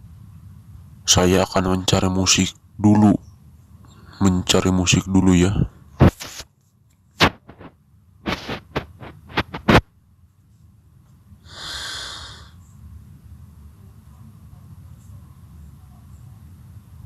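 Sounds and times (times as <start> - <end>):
short breathy hiss: 8.3 - 9.8, 11.4 - 12.6.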